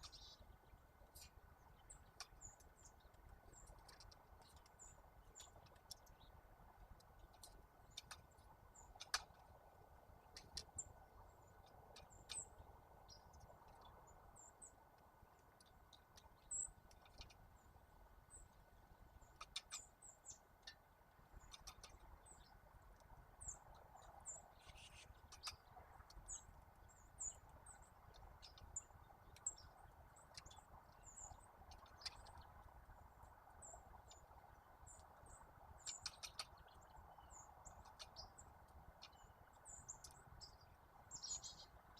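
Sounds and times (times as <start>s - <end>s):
small birds chirping: 0.0s - 41.9s.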